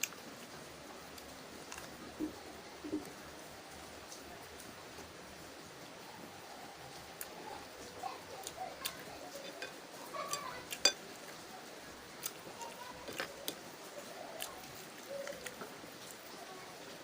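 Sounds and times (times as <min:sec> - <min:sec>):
cutlery clinking against a bowl: 0:09.3 - 0:11.0.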